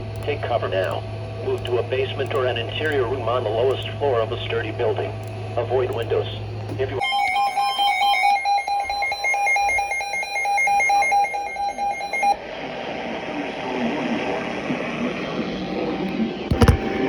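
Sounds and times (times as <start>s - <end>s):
radio hiss: 0.0s - 7.0s, 12.4s - 17.0s
shrill electronic beeping: 7.0s - 12.4s.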